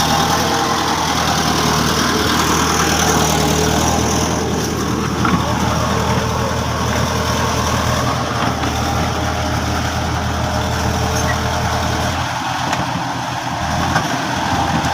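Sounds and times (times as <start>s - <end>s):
bulldozer diesel engine hum: 0.0s - 14.9s.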